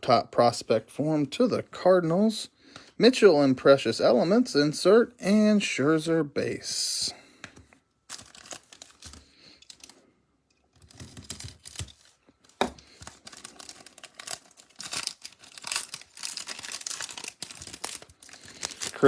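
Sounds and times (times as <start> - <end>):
wrapper tearing and crinkling: 8.1 - 10.0, 10.7 - 19.0.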